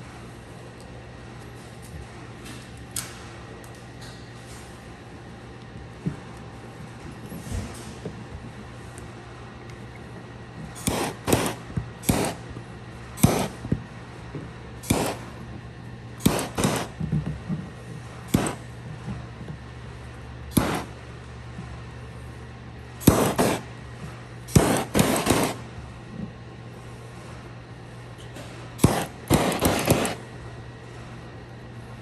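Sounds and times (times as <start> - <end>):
steady low hum: 8.0 - 32.0.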